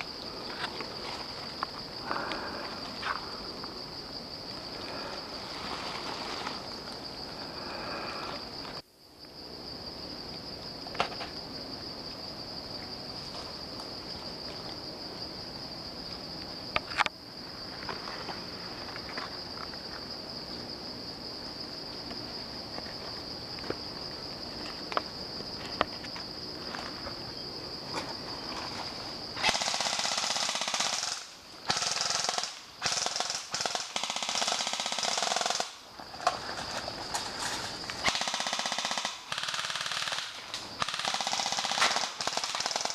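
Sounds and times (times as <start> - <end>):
airsoft guns firing bursts: 29.4 - 35.8, 38.0 - 42.9.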